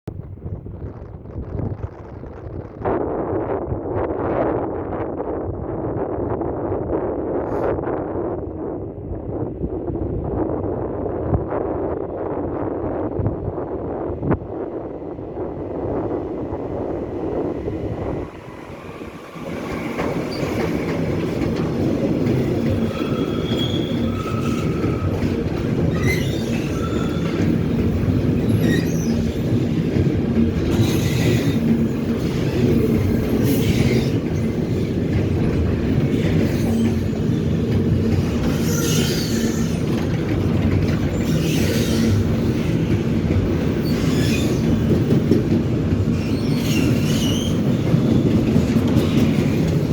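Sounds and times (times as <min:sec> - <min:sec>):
train wagons rumbling: 0:07.1 - 0:49.9
wheels clacking over rail joints: 0:19.3 - 0:49.9
high-pitched wheel squeals: 0:22.9 - 0:25.2, 0:25.9 - 0:27.4, 0:28.5 - 0:29.5, 0:38.5 - 0:39.9, 0:46.2 - 0:47.8.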